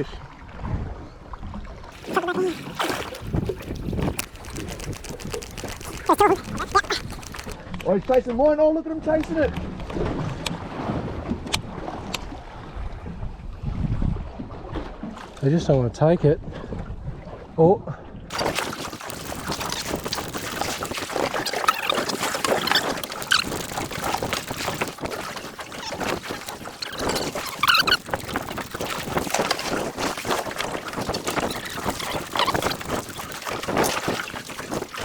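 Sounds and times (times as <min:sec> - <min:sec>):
water splashing around a boat: 0:01.9 - 0:07.6, 0:18.3 - 0:35.0
short high squeaks: 0:02.0 - 0:07.6, 0:18.3 - 0:35.0.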